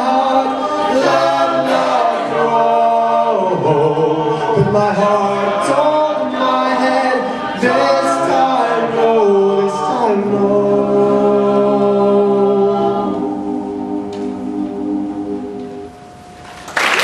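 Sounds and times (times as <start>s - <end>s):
a cappella group singing: 0.0s - 15.9s.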